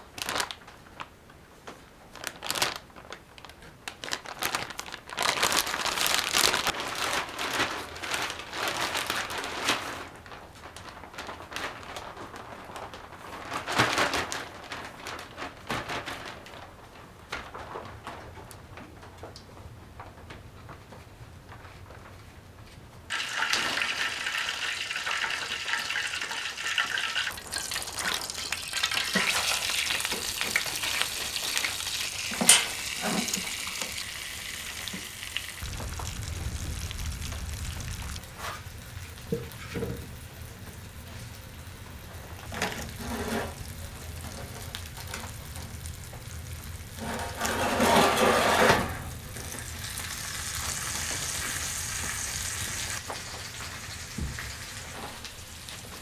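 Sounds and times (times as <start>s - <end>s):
food sizzling in a frying pan: 23.1s - 56.0s.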